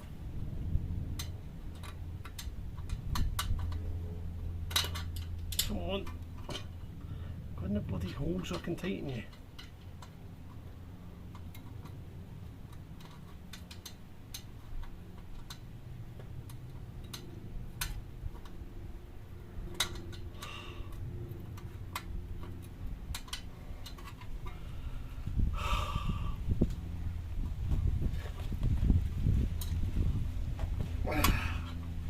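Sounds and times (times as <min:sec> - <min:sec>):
low rumble: 0:16.0 - 0:32.0.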